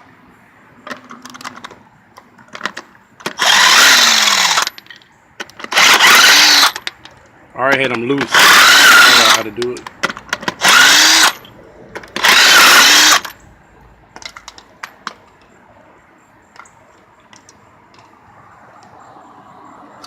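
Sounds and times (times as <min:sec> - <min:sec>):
power tool spinning lug nuts: 0:02.5 - 0:07.0, 0:07.8 - 0:13.4.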